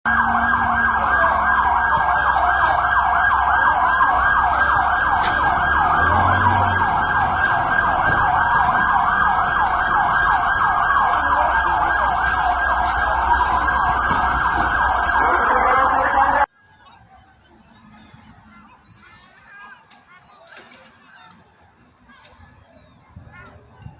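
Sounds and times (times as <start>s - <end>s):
low engine rumble: 0.1s - 16.4s
siren wailing: 0.1s - 16.5s
siren yelping: 0.1s - 16.5s.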